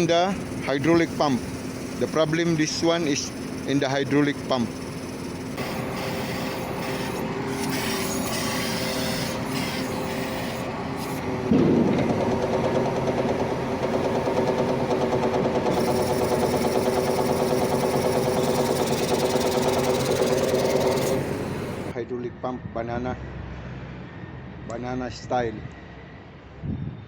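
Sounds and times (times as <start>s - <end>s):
hydraulic pump humming: 0.0s - 22.0s
fast metallic rattle: 11.5s - 21.9s.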